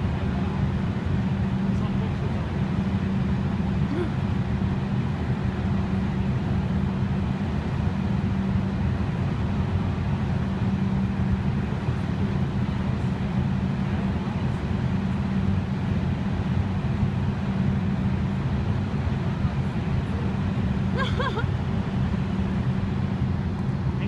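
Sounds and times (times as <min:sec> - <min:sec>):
low motor rumble: 0:00.0 - 0:24.0.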